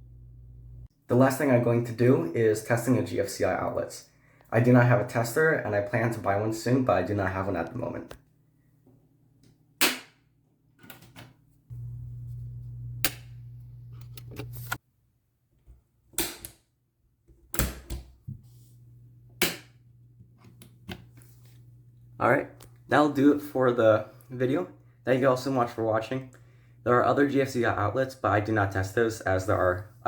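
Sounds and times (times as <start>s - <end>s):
low steady hum: 0.0s - 8.2s, 11.7s - 14.8s.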